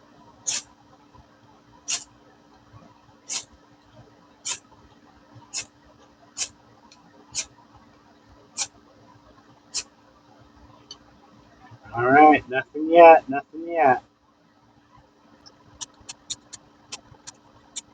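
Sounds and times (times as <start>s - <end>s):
ferro rod scraping: 0.5s - 0.7s, 3.3s - 3.5s.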